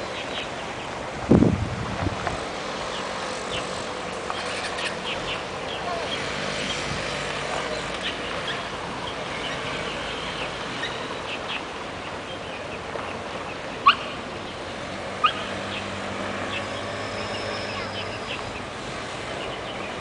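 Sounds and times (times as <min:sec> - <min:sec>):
birds chirping: 0:00.0 - 0:01.0, 0:02.5 - 0:20.0
outdoor background noise: 0:00.0 - 0:20.0.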